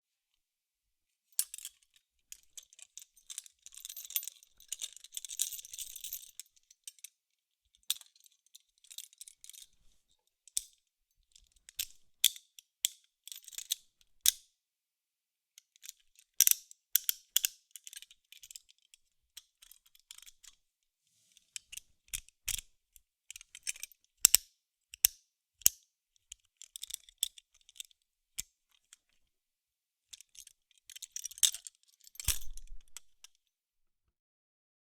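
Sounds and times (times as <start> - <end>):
handcuff chain rattling: 1.4 - 7.1.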